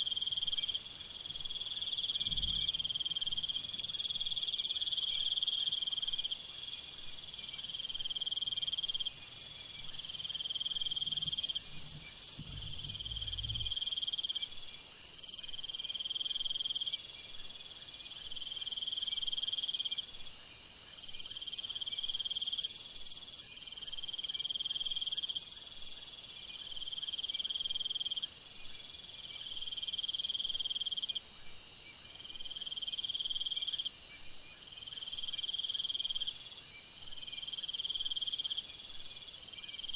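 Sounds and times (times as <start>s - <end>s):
chorus of crickets and insects: 0.0s - 39.9s
insect trilling: 8.7s - 14.2s
faint low rumble: 11.1s - 13.8s.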